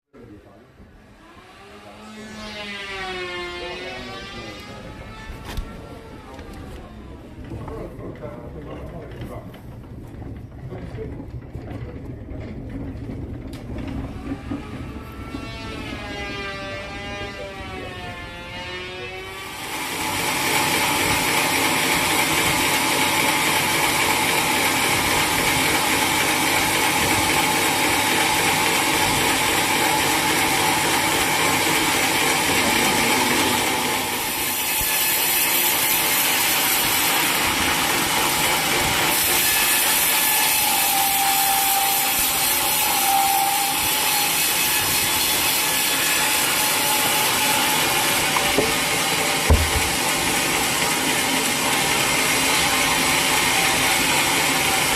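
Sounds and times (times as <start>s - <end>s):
sawmill machinery rattling: 19.4s - 54.9s
short knock: 49.5s - 50.0s.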